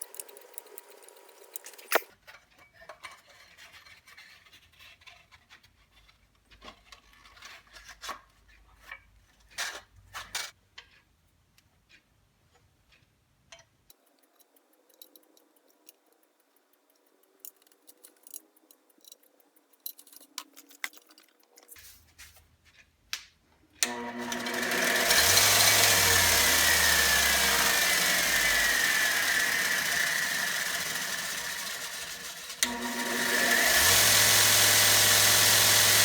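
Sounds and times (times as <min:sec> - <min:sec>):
clicks and taps of parts: 0:09.6 - 0:21.8
belt grinder running: 0:23.8 - 0:36.0.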